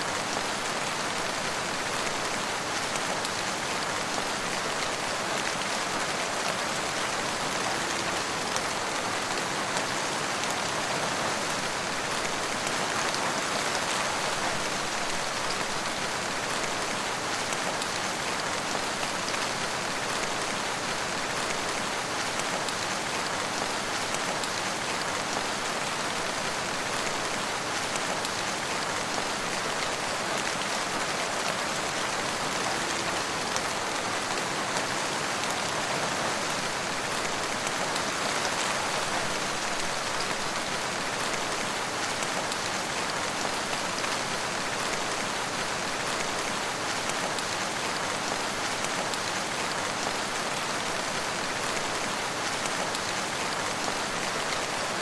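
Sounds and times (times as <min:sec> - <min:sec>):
steady rain falling: 0:00.0 - 0:55.0.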